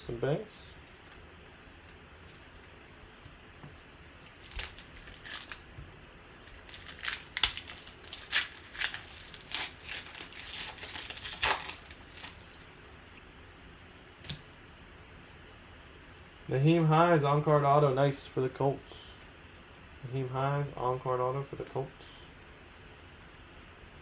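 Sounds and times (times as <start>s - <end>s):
trading card wrappers rustling: 4.2s - 5.7s, 6.5s - 12.7s.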